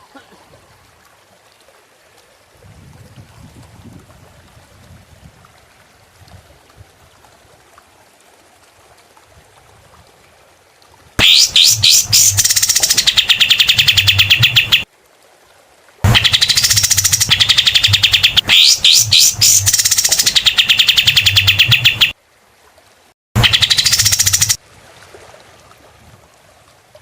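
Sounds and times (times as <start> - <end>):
songbird singing rapid high notes: 11.2 - 14.8, 16.1 - 22.1, 23.4 - 24.6.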